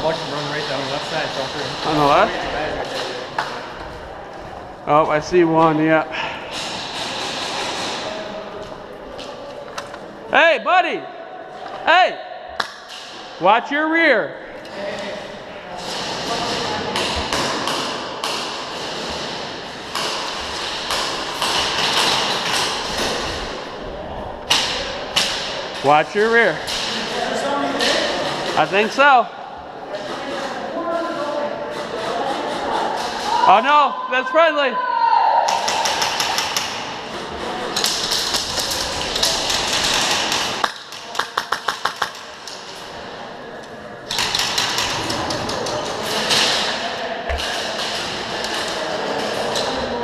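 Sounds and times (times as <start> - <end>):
airsoft gunfire: 37.8 - 42.2.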